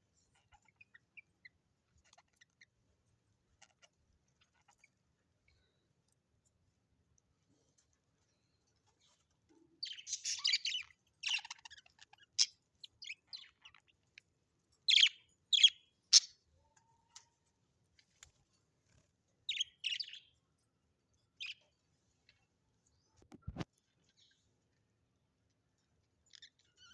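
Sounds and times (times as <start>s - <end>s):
parrots chirping: 0.3s - 2.7s, 3.5s - 5.0s, 9.8s - 14.2s, 14.8s - 16.5s, 19.5s - 20.3s, 21.4s - 21.8s, 26.2s - 26.9s.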